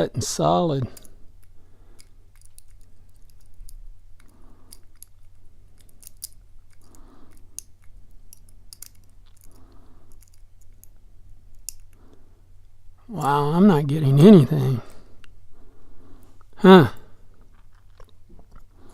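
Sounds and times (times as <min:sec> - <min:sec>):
metallic lock picking clicks: 0:00.9 - 0:12.0.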